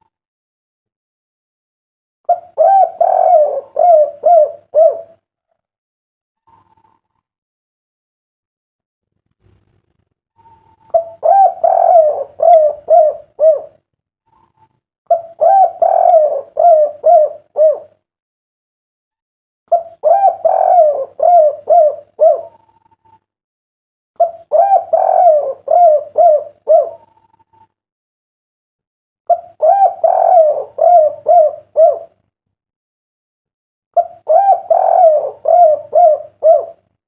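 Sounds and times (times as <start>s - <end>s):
dove cooing: 2.3s - 5.2s, 10.4s - 18.0s, 19.7s - 23.0s, 24.2s - 27.6s, 29.3s - 32.2s, 34.0s - 36.9s.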